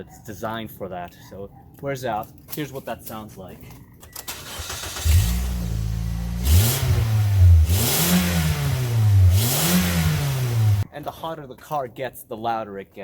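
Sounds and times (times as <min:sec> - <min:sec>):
car engine revving: 0:04.5 - 0:10.8.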